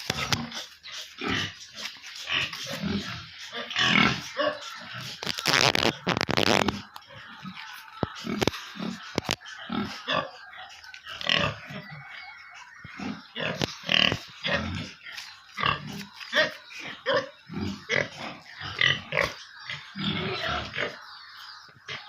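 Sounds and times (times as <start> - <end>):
pigs grunting and squealing: 0.0 - 22.0.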